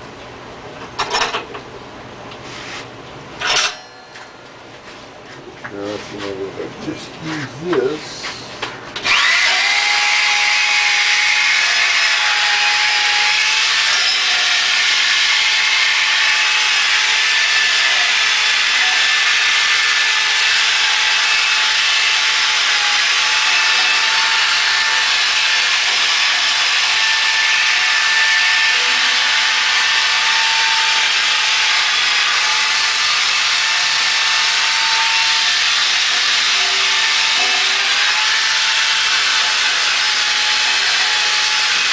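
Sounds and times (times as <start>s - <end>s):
power tool whine: 9.0s - 41.9s.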